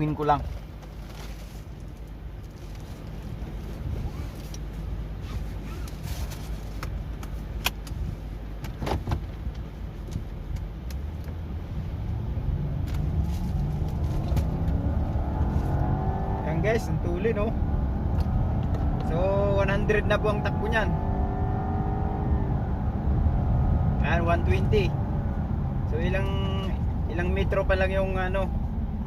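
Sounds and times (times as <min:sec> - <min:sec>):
road noise: 0:00.0 - 0:29.0
car engine accelerating: 0:10.1 - 0:29.0.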